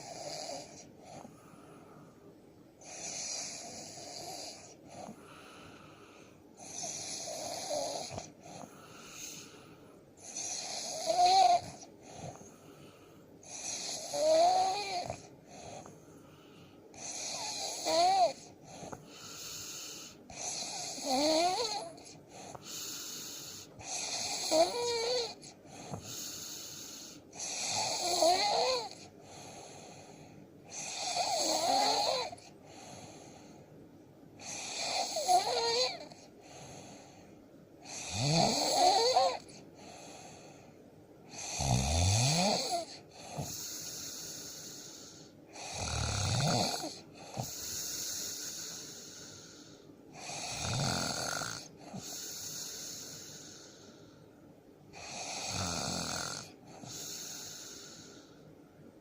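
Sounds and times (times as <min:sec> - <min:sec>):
man snoring with whistle: 0:02.8 - 0:04.8, 0:06.6 - 0:08.3, 0:10.2 - 0:11.8, 0:13.5 - 0:15.2, 0:17.0 - 0:18.4, 0:20.4 - 0:21.9, 0:23.5 - 0:25.4, 0:26.9 - 0:29.0, 0:30.7 - 0:32.4, 0:34.4 - 0:36.2, 0:37.8 - 0:39.5, 0:41.3 - 0:49.5, 0:50.2 - 0:53.7, 0:55.0 - 0:58.1.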